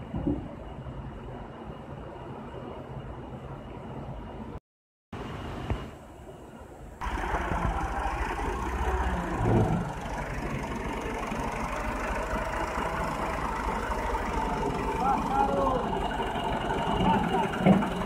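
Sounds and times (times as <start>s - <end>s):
tractor engine running: 7.0s - 18.0s.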